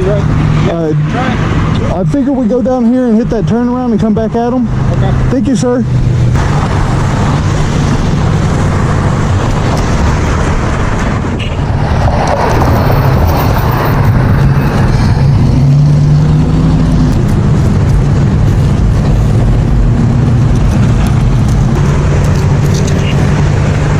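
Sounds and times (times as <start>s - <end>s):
passing traffic: 0.0s - 23.9s
wind rush: 5.9s - 23.9s
motorcycle engine running: 16.1s - 23.9s.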